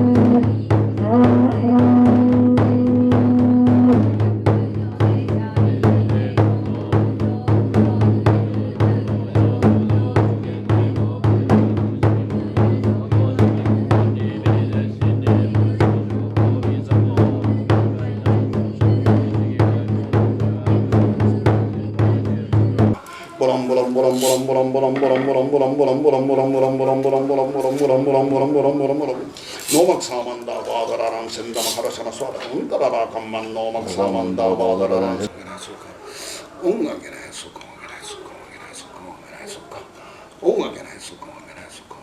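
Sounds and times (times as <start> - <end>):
held note: 0.0 - 4.3
drum struck steadily: 0.0 - 23.0.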